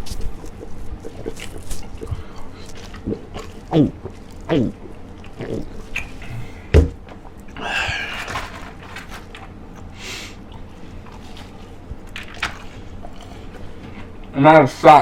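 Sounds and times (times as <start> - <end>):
thunk: 6.7 - 7.0.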